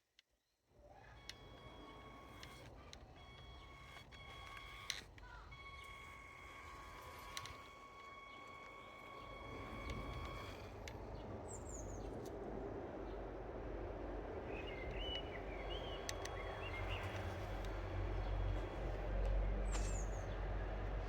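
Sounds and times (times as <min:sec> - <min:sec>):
steady noisy rumble: 0:09.0 - 0:21.0
bird chirps: 0:14.5 - 0:17.5.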